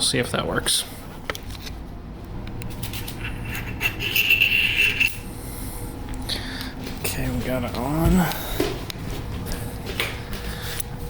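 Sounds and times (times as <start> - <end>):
metal parts clicking and scraping: 2.7 - 5.3.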